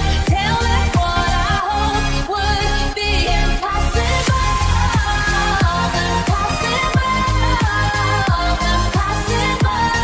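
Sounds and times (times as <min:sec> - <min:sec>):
electronic pop music: 0:00.0 - 0:10.0.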